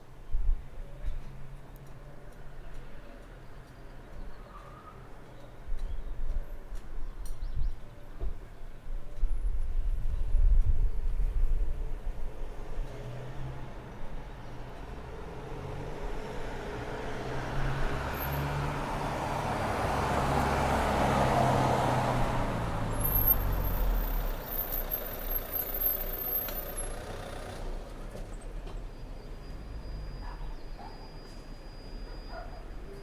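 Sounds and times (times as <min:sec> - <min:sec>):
vehicle passing by: 0:14.6 - 0:28.1.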